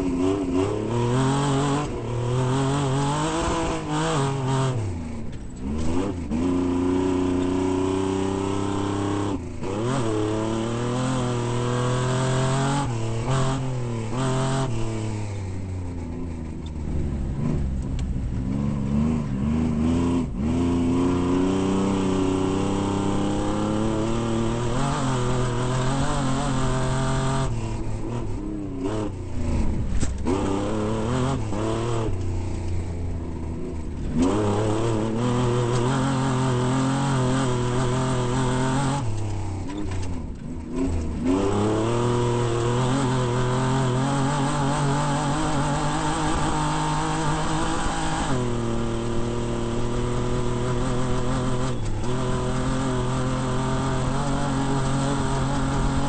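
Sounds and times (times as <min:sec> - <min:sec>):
truck engine revving: 0:16.2 - 0:56.0.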